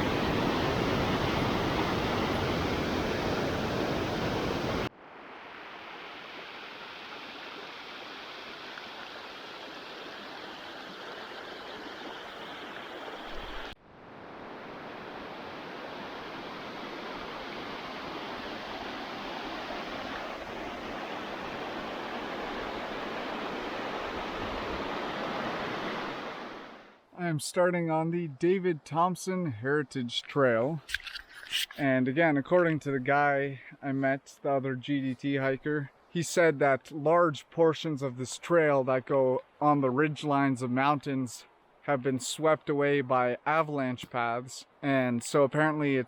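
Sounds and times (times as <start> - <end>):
running water rushing: 0.0 - 26.9.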